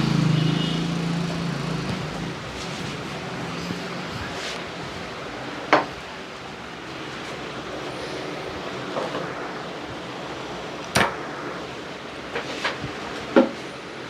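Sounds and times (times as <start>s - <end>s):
outdoor street noise: 0.0s - 14.0s
sharp smacks: 10.9s - 11.4s.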